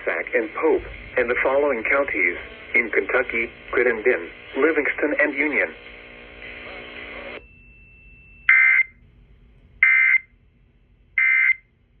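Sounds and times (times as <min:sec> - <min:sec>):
steady buzz: 0:00.0 - 0:12.0.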